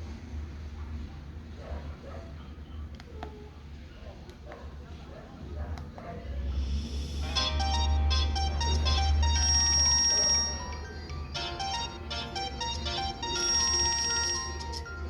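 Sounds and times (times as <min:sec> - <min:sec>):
polyphonic phone ringtone: 0:07.2 - 0:15.0.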